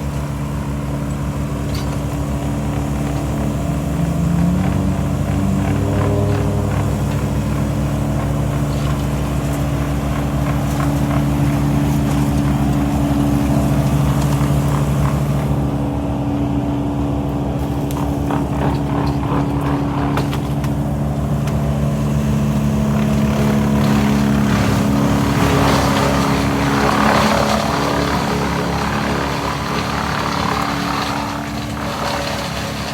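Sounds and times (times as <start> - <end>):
chainsaw engine running: 2.2 - 32.9.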